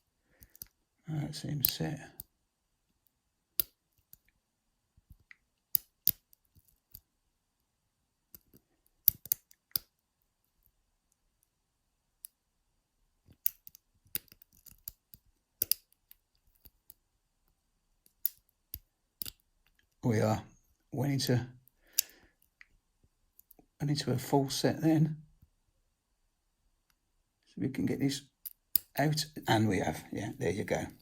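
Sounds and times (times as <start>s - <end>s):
lock picks clicking in lock: 5.7s - 7.0s, 8.3s - 9.9s, 13.3s - 17.0s, 18.0s - 19.4s, 28.4s - 29.0s.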